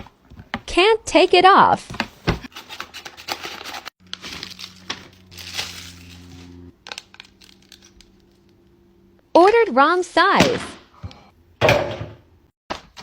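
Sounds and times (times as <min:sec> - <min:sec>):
crinkling handling noise: 0:02.0 - 0:08.8
steady low hum: 0:04.0 - 0:09.8.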